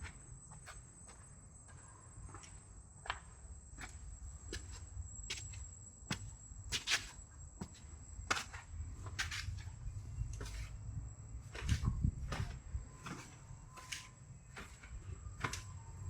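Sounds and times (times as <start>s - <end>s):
footsteps walking: 0.0s - 10.8s, 11.4s - 16.0s
steady high-pitched whine: 0.0s - 16.0s.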